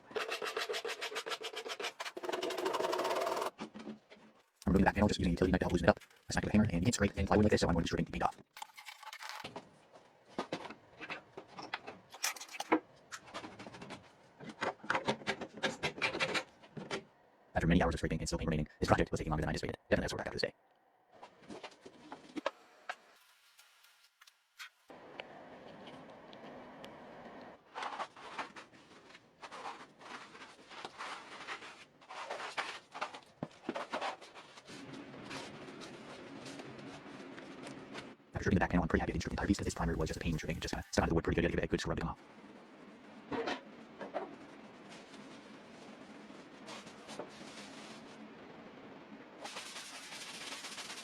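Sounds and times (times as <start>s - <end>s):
scraper scraping paint off wood: 49.4s - 51.0s.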